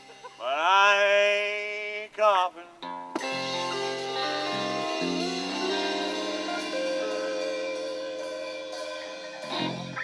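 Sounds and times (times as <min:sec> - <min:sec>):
guitar chord ringing: 0:02.8 - 0:10.0
cymbals washing: 0:03.2 - 0:10.0.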